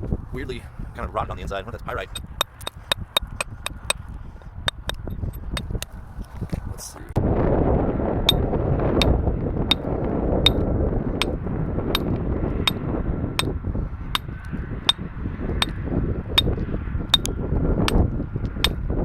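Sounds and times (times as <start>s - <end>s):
low wind rumble: 0.0s - 19.0s
metal tool tapping on rock: 1.9s - 4.0s, 4.6s - 5.9s, 9.7s - 10.6s, 12.0s - 12.8s, 17.1s - 17.3s, 18.6s - 18.8s.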